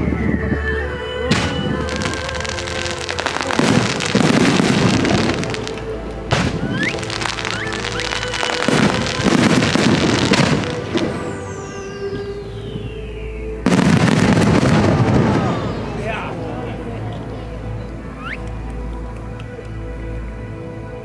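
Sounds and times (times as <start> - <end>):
rising whistles: 0.0 - 18.7
fireworks crackling: 0.0 - 18.9
show music: 0.0 - 20.2
fireworks bang: 1.3 - 12.0, 13.7 - 17.3.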